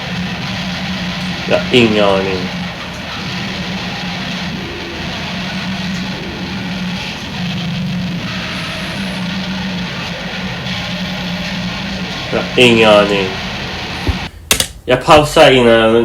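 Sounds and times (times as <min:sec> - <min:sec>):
low hum: 0:00.0 - 0:14.9
distorted noisy rumble: 0:00.0 - 0:16.0.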